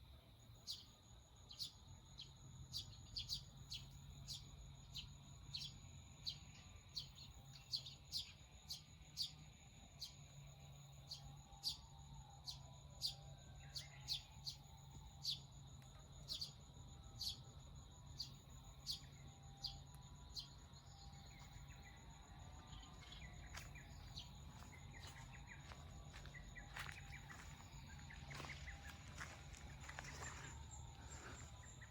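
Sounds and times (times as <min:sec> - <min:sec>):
faint low hum: 0:00.0 - 0:31.9
birds varied calls: 0:18.2 - 0:31.9.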